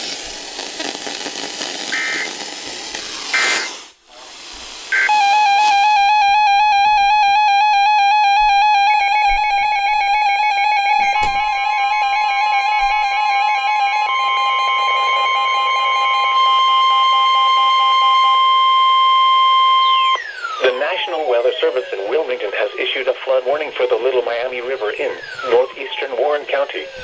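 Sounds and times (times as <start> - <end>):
steady high alarm tone: 1.9 - 2.4, 3.3 - 3.7, 4.9 - 22.7, 24.1 - 27.0
warbling alert tone: 5.0 - 18.4.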